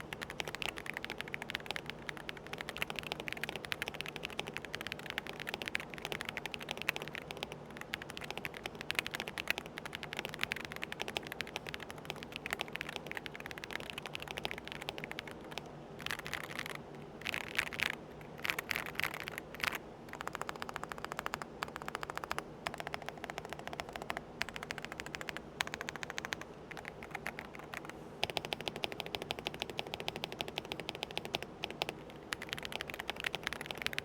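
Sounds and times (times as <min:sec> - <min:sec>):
mechanical keyboard typing: 0:00.0 - 0:34.0.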